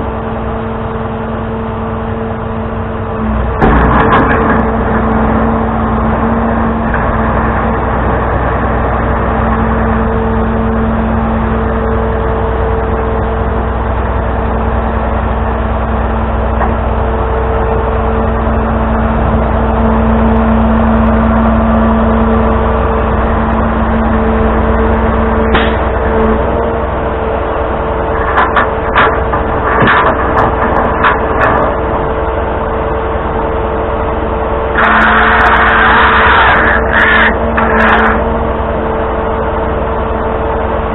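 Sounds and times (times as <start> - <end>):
truck engine running: 0.0 - 40.9.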